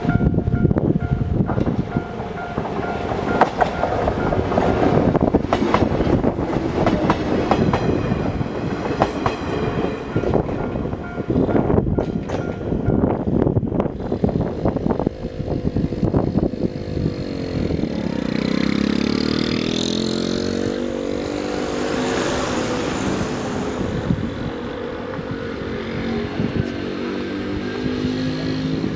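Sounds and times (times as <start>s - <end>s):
wind buffeting microphone: 0.0s - 28.9s
vehicle rumble: 13.2s - 28.9s.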